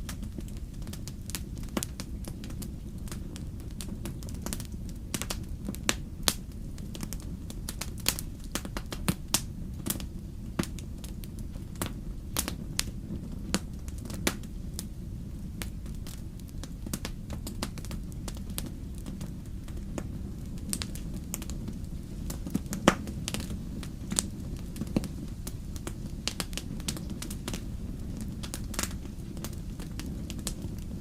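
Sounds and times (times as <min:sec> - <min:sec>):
low rumble of flames: 0:00.0 - 0:31.0
wood fire crackling and popping: 0:00.0 - 0:31.0.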